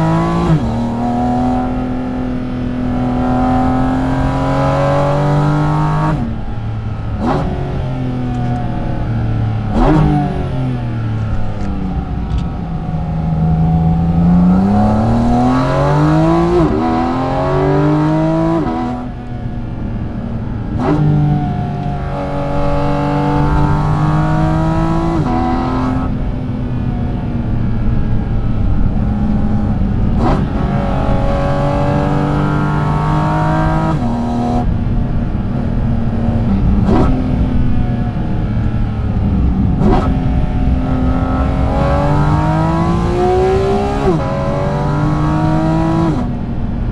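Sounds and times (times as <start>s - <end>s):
car engine revving through gears: 0.0s - 19.6s, 20.4s - 34.7s, 35.5s - 46.6s
gear shift click: 11.1s - 12.6s.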